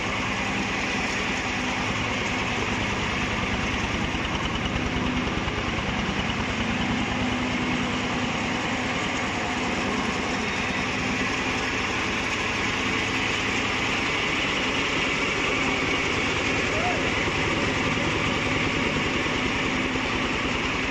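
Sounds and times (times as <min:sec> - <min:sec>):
combine harvester engine pulsing: 0:00.0 - 0:20.9.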